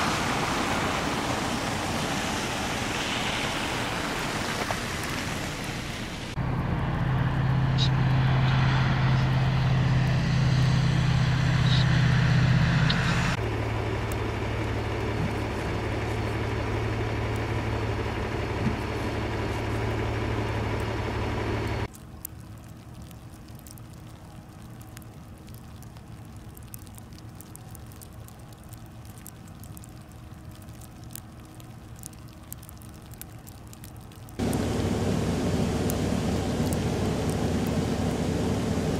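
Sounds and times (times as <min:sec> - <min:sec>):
vehicle engine running: 0:00.0 - 0:21.9, 0:34.4 - 0:38.9
road noise: 0:00.0 - 0:38.9.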